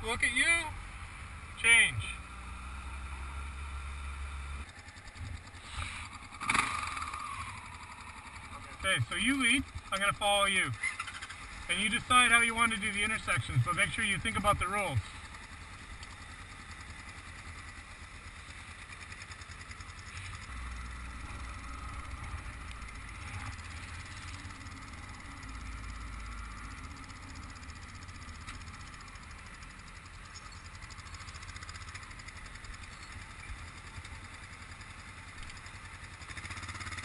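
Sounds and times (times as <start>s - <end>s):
motorcycle engine running: 0.0s - 37.0s.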